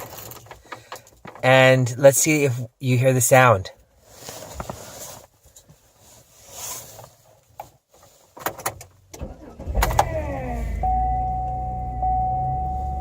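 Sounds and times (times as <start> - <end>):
car engine starting and idling: 8.7 - 13.0.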